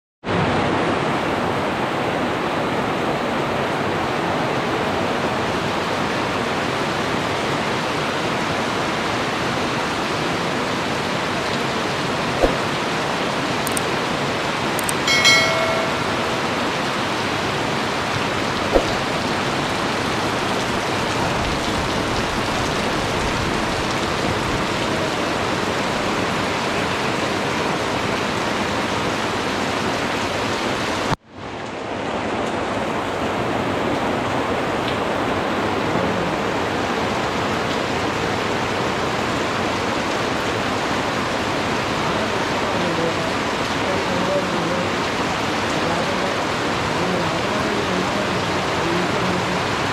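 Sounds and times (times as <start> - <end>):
heavy rain hissing: 0.4 - 31.2, 32.7 - 49.9
sharp click: 13.7 - 13.9.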